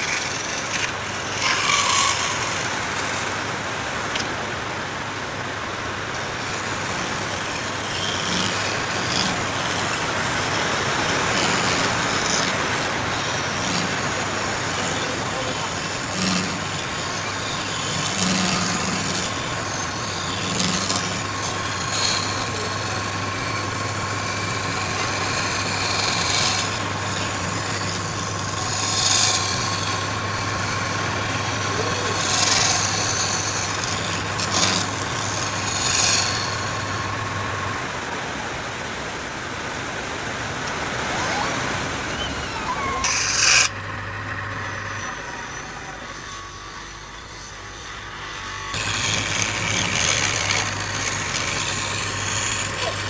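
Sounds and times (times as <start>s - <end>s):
machine hum: 0.0s - 53.0s.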